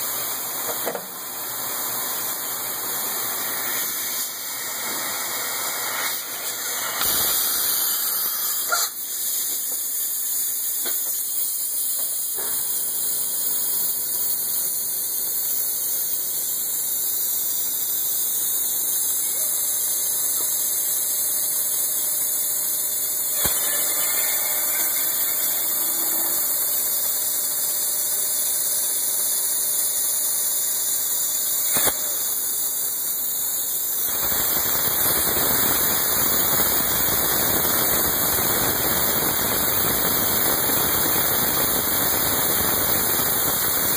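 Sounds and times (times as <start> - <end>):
machine tool cutting metal: 3.6 - 9.7, 19.0 - 43.9.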